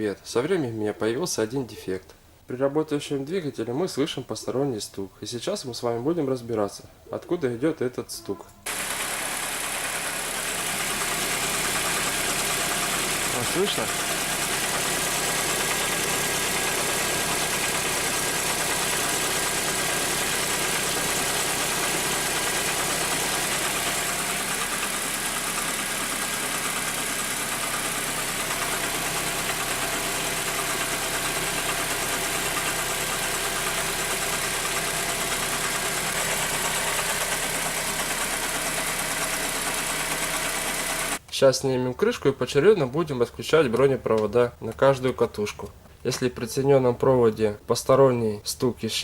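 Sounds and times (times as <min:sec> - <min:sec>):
car engine idling with knock: 0:08.7 - 0:41.2.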